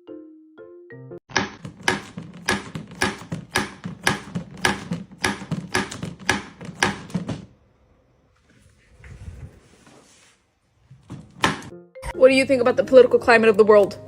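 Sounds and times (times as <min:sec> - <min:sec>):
sharp knocks: 0:01.3 - 0:07.5, 0:11.0 - 0:11.7.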